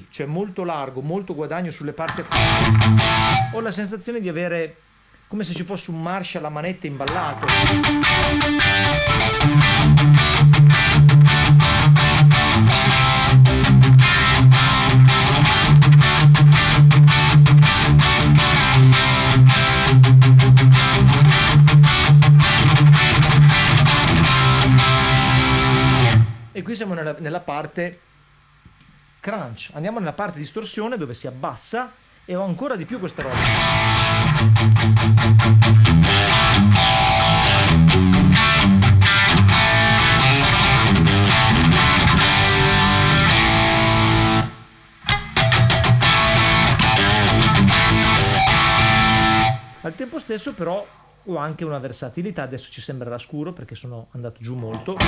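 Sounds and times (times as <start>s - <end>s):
overdriven electric guitar chords: 2.1s - 3.6s, 7.1s - 26.5s, 33.2s - 49.8s.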